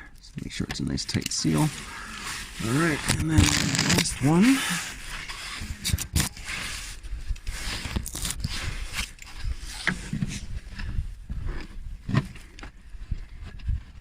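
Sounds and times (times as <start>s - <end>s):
clicks and scrapes on plastic housing: 3.0s - 4.4s.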